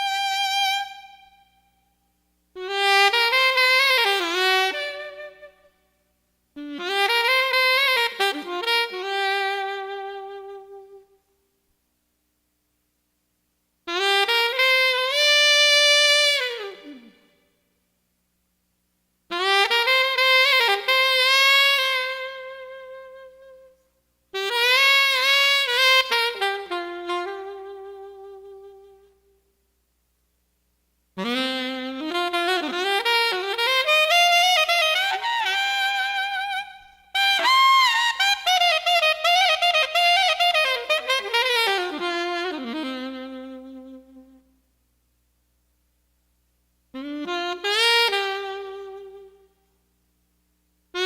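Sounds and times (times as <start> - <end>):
solo melody of long held notes: 25.3 - 29.3.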